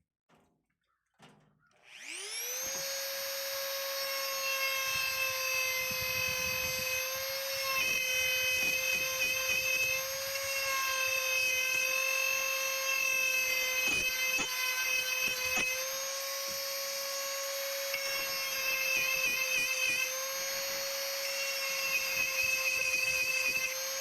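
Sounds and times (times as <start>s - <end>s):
power carving tool whining: 1.8s - 24.0s
grinding into wood: 4.1s - 16.7s.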